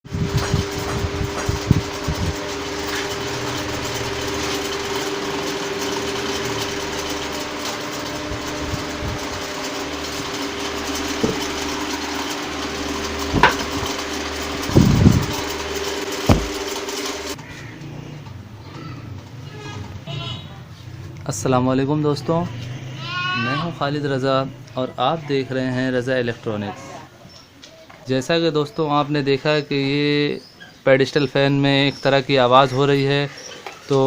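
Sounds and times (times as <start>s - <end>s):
pedestal fan humming: 0.0s - 34.0s
sharp knocks: 11.2s - 11.6s, 13.3s - 13.9s, 16.3s - 16.7s.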